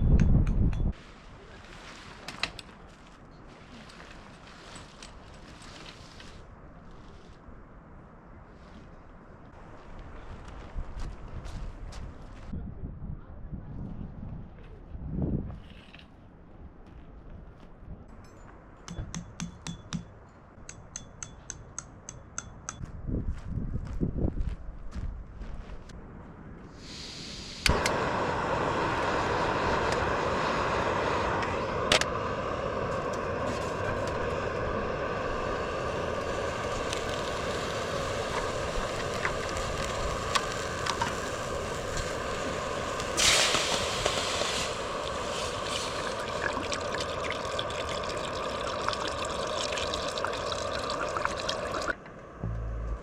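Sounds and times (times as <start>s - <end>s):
water running: 35.4s - 52.0s.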